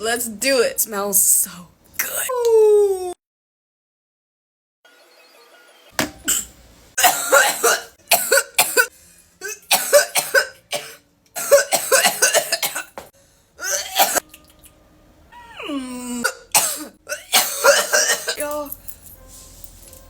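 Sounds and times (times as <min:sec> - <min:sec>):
person coughing hard: 0:06.3 - 0:13.0, 0:13.6 - 0:14.2, 0:16.1 - 0:18.4.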